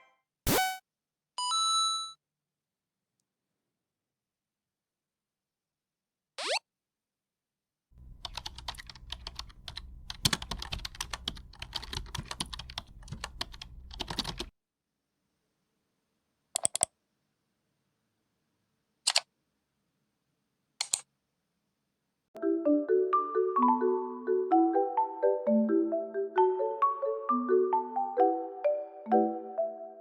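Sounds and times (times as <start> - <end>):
keyboard key clicks: 8.1 - 14.5, 16.6 - 16.9.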